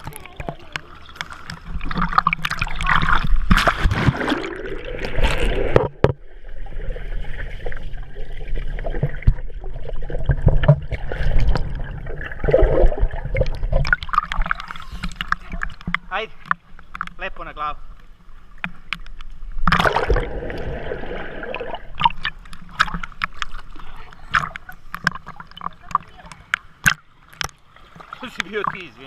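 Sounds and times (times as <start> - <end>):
water splashing and trickling: 0.0 - 29.0.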